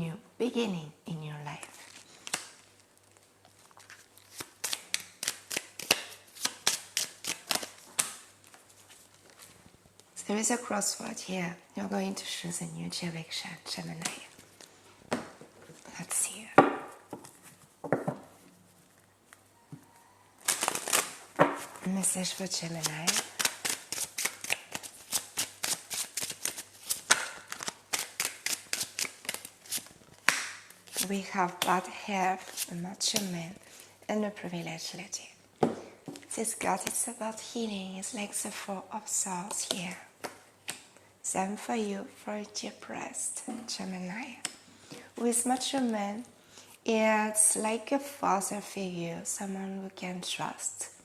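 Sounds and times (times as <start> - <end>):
cards being shuffled: 3.8 - 9.6, 22.6 - 31.2.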